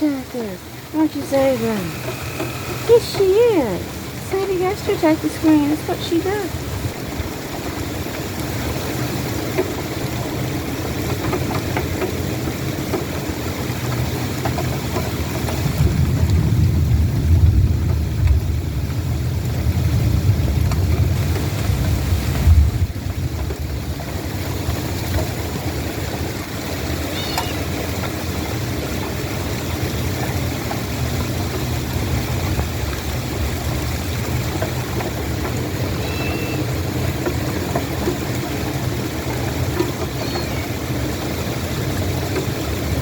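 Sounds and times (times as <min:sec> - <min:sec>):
rain falling: 0:00.0 - 0:43.0.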